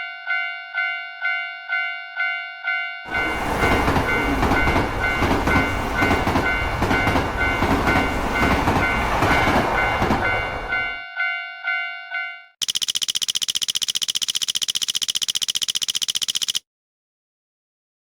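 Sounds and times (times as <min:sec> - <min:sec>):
railroad crossing bell dinging: 0:00.0 - 0:12.5
train wheels on rails: 0:03.1 - 0:10.8.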